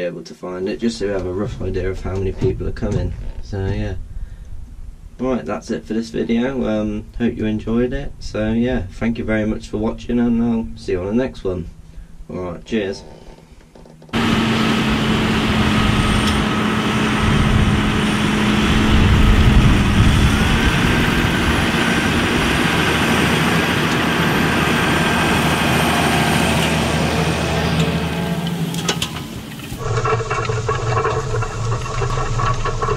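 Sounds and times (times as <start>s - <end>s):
heavy engine running: 14.1s - 32.9s.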